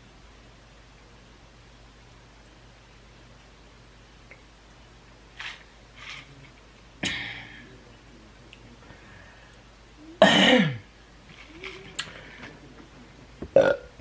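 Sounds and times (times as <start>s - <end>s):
woman clearing her throat: 10.2s - 10.9s.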